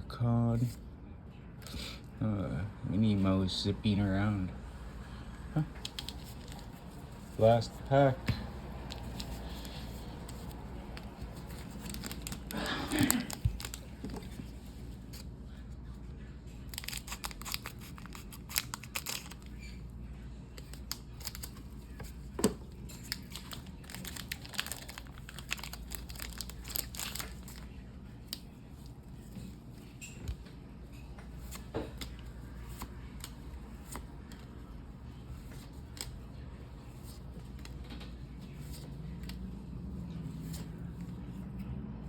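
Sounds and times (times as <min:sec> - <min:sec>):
foil wrapper crinkling and tearing: 0:11.0 - 0:14.4, 0:16.7 - 0:19.8, 0:20.6 - 0:21.6, 0:23.0 - 0:27.7.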